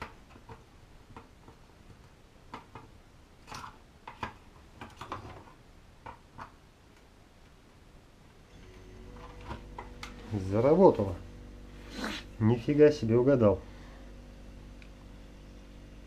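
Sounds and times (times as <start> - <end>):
refrigerator compressor humming: 8.5 - 16.0.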